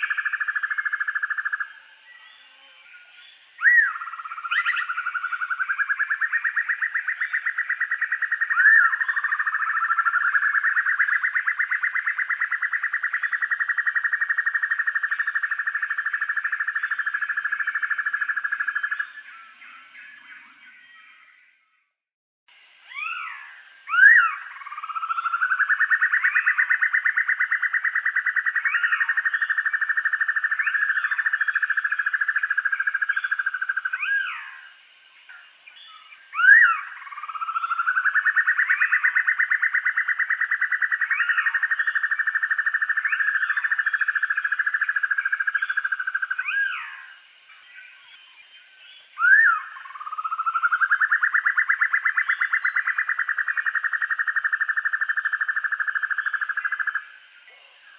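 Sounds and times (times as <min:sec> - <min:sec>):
bird whistled calls: 0:03.6 - 0:11.9, 0:22.9 - 0:26.8, 0:35.9 - 0:39.7, 0:49.2 - 0:53.0
bird trilling: 0:22.9 - 0:31.8.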